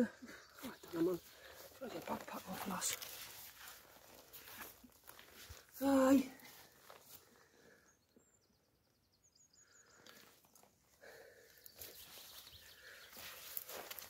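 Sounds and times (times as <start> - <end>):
faint shuffling: 0.6 - 7.3.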